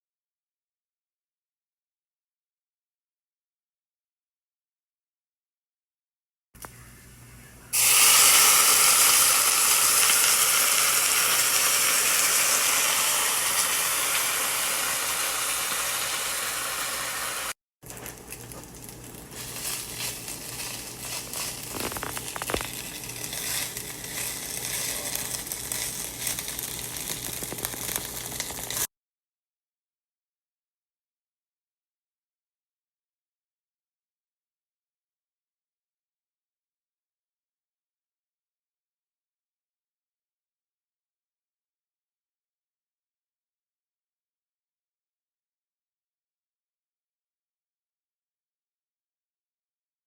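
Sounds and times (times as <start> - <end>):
food sizzling in a hot pan: 7.8 - 28.9
sizzle crackling and popping: 7.8 - 28.9.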